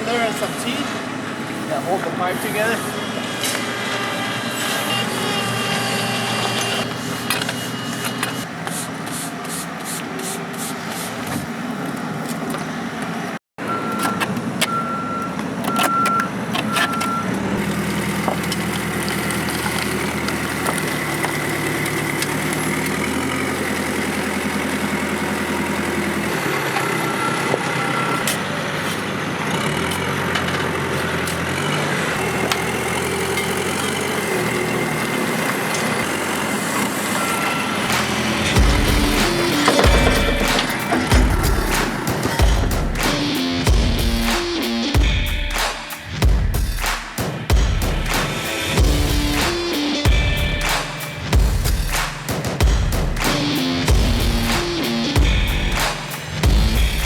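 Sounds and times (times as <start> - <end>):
diesel engine working: 0.0 - 57.0
reversing alarm beeping: 13.6 - 17.9, 24.2 - 28.9, 35.7 - 45.6.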